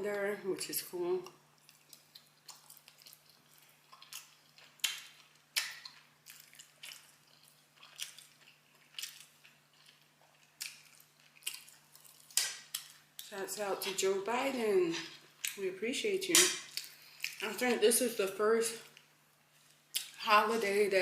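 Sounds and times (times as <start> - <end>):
person chewing food: 1.3 - 14.0, 16.6 - 17.5.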